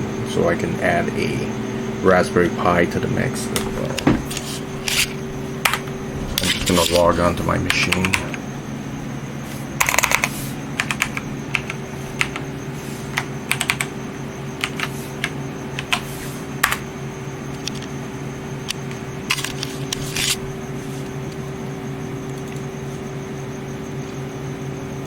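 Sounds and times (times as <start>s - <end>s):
steady hum: 0.0s - 25.0s
keyboard typing: 7.7s - 8.4s, 9.8s - 12.4s, 13.2s - 13.9s.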